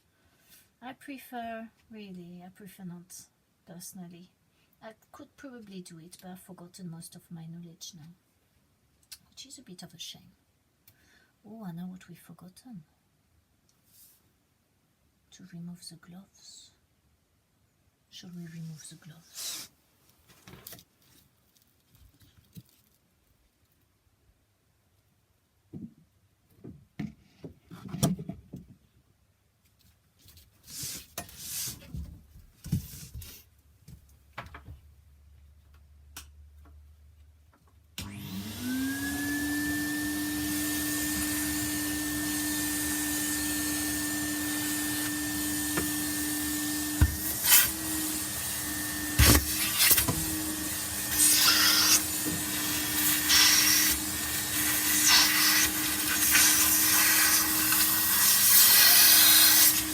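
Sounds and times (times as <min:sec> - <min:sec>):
rubbing and handling sounds: 0:19.2 - 0:23.9, 0:29.6 - 0:33.7
vacuum cleaner motor whine: 0:38.0 - 0:59.9.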